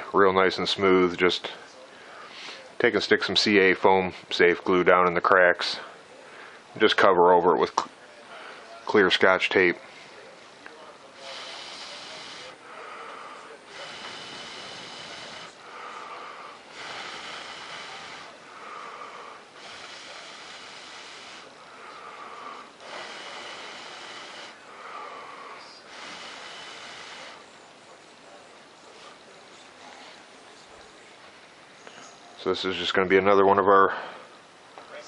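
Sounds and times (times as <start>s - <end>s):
person breathing: 1.5s - 2.8s, 5.8s - 6.7s, 8.3s - 8.8s, 11.1s - 27.6s.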